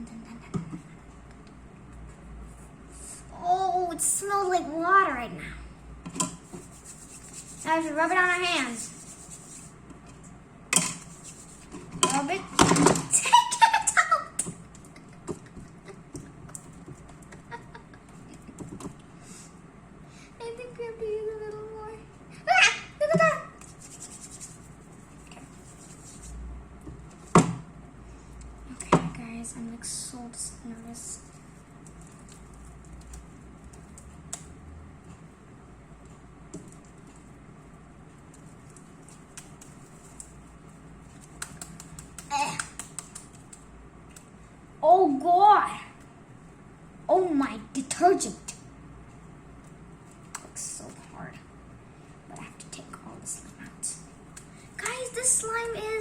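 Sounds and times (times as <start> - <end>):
steady low hum: 0.0 - 56.0
sticky slime clicks and smacks: 41.3 - 44.3.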